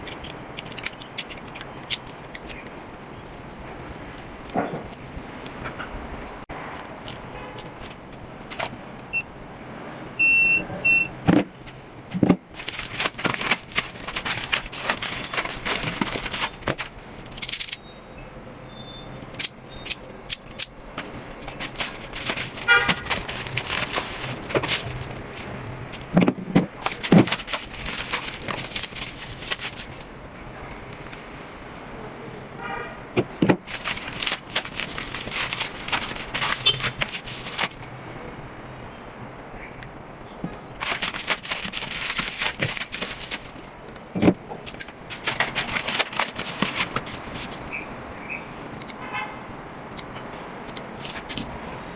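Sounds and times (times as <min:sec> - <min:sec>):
packaging rustling and clicking: 0:00.0 - 0:02.8, 0:07.1 - 0:08.8, 0:11.4 - 0:17.8, 0:19.3 - 0:30.1, 0:33.2 - 0:37.9, 0:40.4 - 0:47.7, 0:50.7 - 0:51.6
short high electronic beeps: 0:10.2 - 0:12.0.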